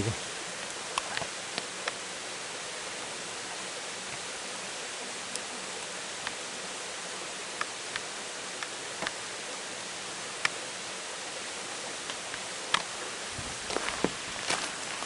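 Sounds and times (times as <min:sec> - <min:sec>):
stream water rushing: 0:00.0 - 0:15.0
footsteps: 0:13.4 - 0:15.0.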